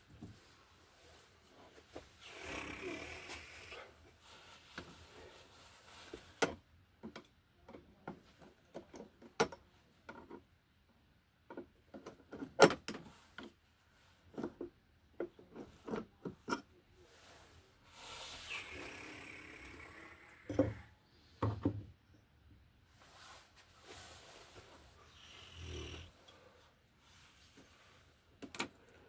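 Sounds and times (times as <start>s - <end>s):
clicks and taps handling wiring: 6.4s - 10.5s, 28.4s - 28.8s.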